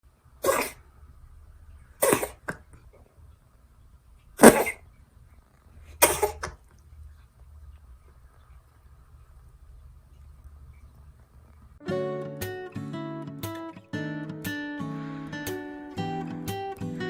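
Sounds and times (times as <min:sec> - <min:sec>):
cat coughing and sneezing: 0:00.4 - 0:00.8, 0:02.0 - 0:02.7, 0:04.4 - 0:04.9, 0:05.9 - 0:06.6.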